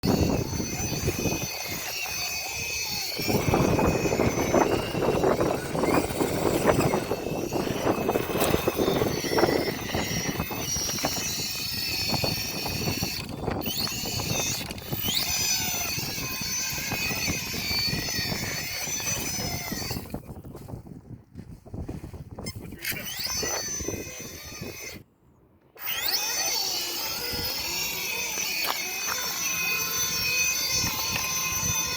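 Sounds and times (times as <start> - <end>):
electric motor whine: 0.0 - 20.6, 22.8 - 25.0, 25.8 - 31.9
scraping and clicking on rock: 25.8 - 31.9.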